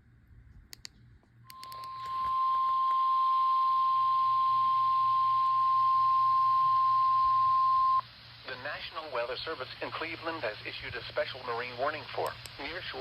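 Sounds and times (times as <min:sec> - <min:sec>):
clicks: 0:00.6 - 0:03.0
steady alarm tone: 0:01.5 - 0:08.0
radio hiss: 0:01.6 - 0:13.0.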